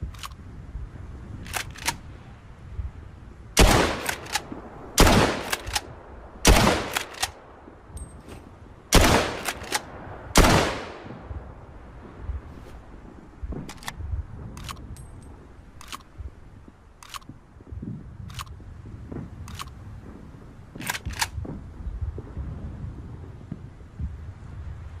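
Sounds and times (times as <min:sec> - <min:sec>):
gun mechanism clicks: 0:00.0 - 0:00.4, 0:01.4 - 0:02.0, 0:03.9 - 0:05.9, 0:06.5 - 0:07.4, 0:09.3 - 0:09.9, 0:13.6 - 0:16.1, 0:17.0 - 0:17.3, 0:18.2 - 0:18.6, 0:19.4 - 0:19.8, 0:20.8 - 0:21.4.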